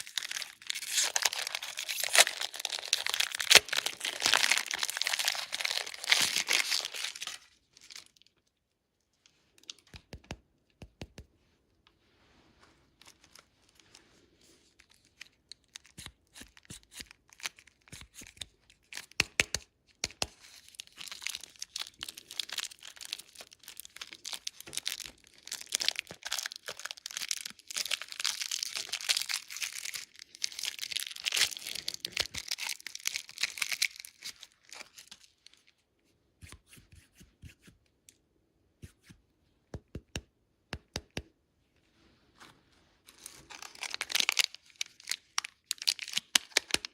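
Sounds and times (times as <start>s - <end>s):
plastic wrapper crinkling: 0.0s - 8.6s, 20.4s - 35.8s, 43.0s - 46.9s.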